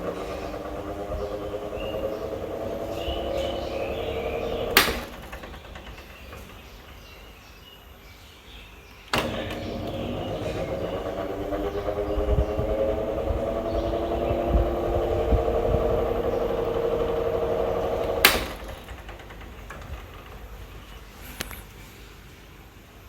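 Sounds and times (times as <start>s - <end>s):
fan switch click: 0.0s - 7.0s, 9.1s - 19.1s
electric fan motor hum: 0.0s - 8.0s, 9.0s - 21.6s.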